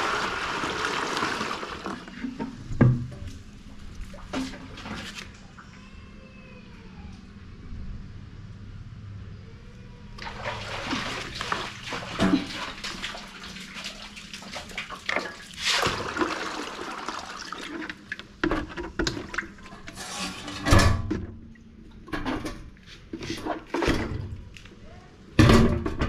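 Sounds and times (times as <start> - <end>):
water splashing and pouring: 0.0 - 2.4, 10.2 - 18.3.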